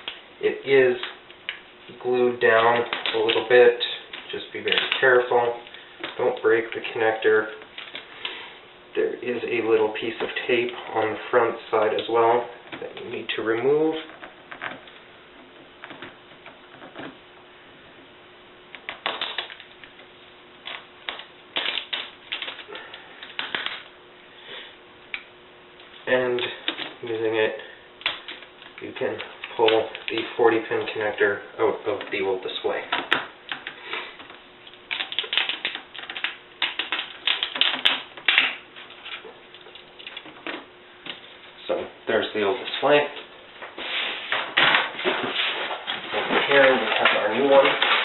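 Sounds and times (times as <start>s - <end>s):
tape peeling: 20.6s - 23.9s, 33.0s - 41.5s.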